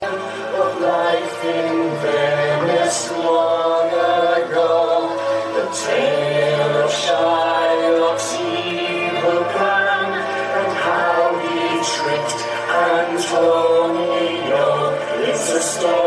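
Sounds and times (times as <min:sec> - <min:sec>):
choir singing: 0:00.0 - 0:16.0.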